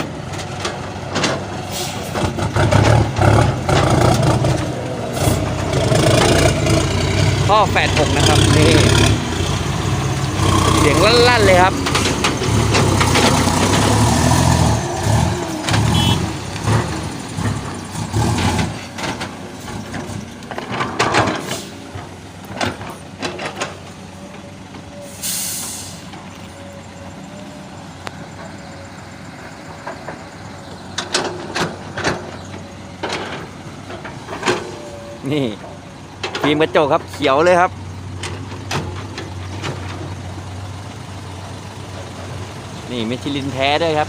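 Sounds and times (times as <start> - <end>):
truck diesel engine running: 0.0 - 44.0
air hiss: 25.1 - 26.1.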